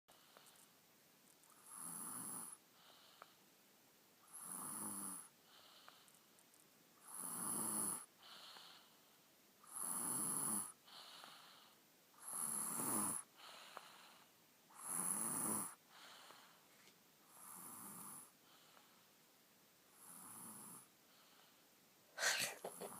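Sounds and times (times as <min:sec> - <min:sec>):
soft breaths: 0:00.1 - 0:03.6, 0:04.2 - 0:10.0, 0:10.6 - 0:19.3, 0:19.9 - 0:22.9
boy snoring: 0:01.6 - 0:02.6, 0:04.3 - 0:05.3, 0:07.0 - 0:08.8, 0:09.6 - 0:11.6, 0:12.2 - 0:14.2, 0:14.8 - 0:15.8, 0:22.2 - 0:22.9.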